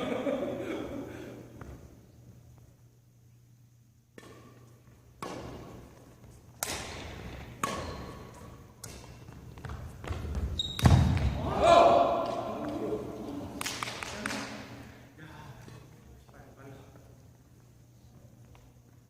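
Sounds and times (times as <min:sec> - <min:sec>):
steady low hum: 0:00.0 - 0:19.0
rackets hitting shuttlecock: 0:04.1 - 0:11.4.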